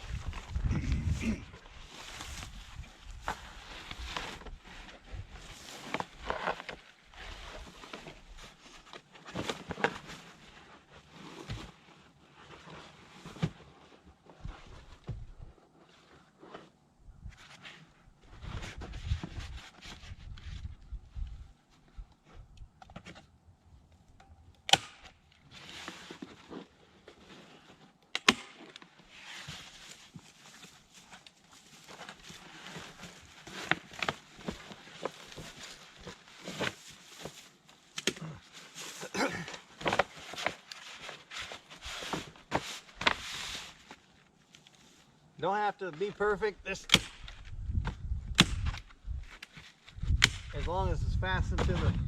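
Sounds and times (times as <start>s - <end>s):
roofing paper rustling and crinkling: 0.0s - 22.0s, 28.6s - 47.7s.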